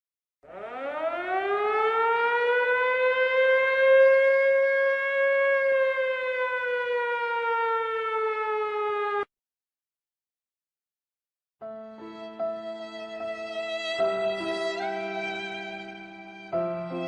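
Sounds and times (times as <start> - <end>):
siren wailing: 0.4 - 9.3.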